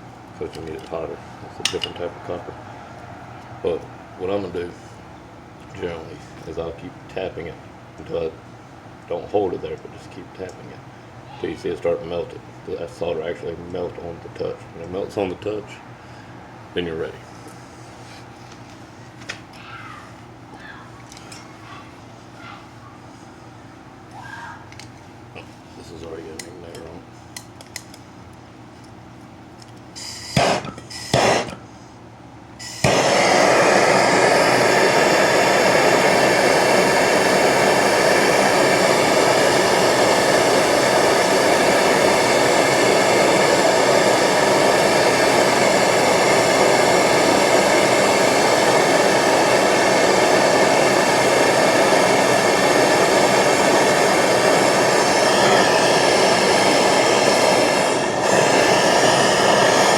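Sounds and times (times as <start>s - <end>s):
gas hiss bursts: 30.0s - 31.6s, 32.6s - 59.9s
torch flame rushing: 30.4s - 31.6s, 32.6s - 59.9s.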